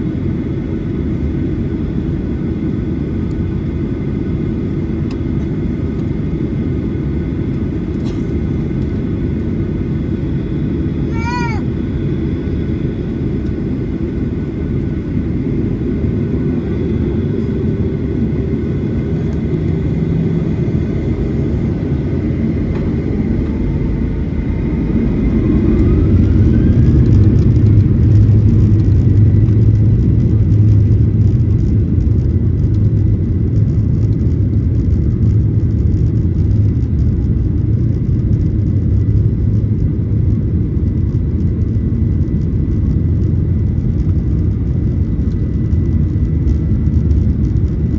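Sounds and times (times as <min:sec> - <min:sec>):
airplane cabin rumble: 0:00.0 - 0:47.9
rising jet engine whine: 0:00.0 - 0:47.9.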